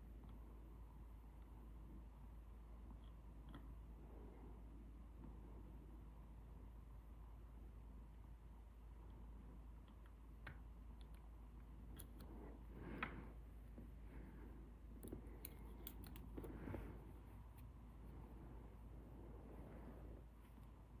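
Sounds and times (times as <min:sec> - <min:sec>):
lock picks clicking and scraping: 0:15.0 - 0:16.5.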